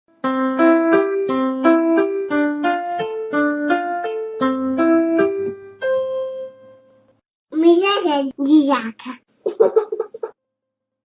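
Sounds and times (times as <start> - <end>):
keyboard playing simple tune: 0.1 - 7.2.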